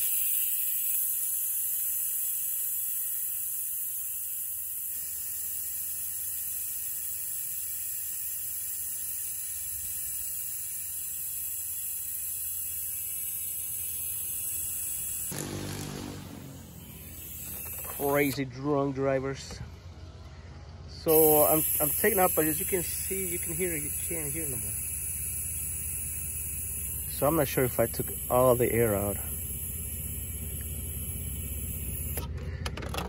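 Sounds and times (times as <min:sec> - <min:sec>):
refrigerant hissing from hose: 0:00.0 - 0:18.3, 0:21.1 - 0:32.2
low sound: 0:15.3 - 0:17.5.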